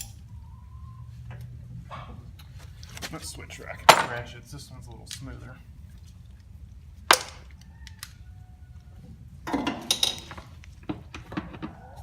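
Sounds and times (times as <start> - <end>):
metal tools clattering: 3.8 - 4.3.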